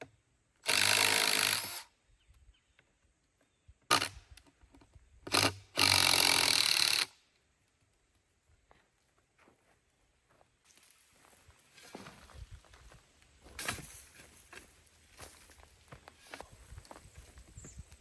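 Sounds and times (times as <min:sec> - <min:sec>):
shovel scraping into rocky soil: 0:13.5 - 0:17.1.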